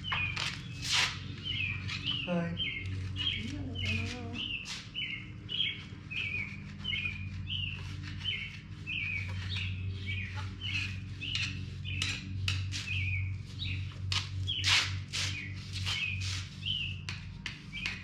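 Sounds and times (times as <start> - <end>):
steady low hum: 0.0 - 18.0
bird calling: 1.4 - 12.2.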